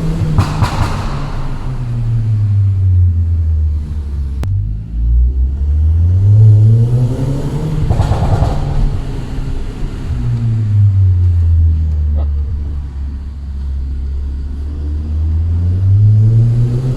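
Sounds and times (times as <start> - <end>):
exhaust pops and crackles: 0.0 - 4.6, 7.4 - 14.2
car engine revving: 0.0 - 16.9.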